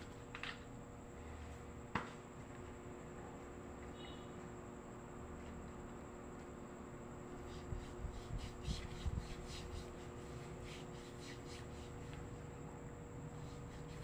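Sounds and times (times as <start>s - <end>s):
hands rubbing skin in massage: 7.4s - 12.3s.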